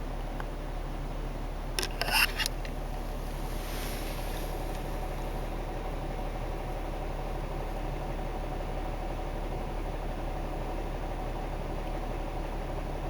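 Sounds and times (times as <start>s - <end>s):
car engine idling: 0.0s - 13.0s
clatter of sharp clicks: 1.8s - 2.8s.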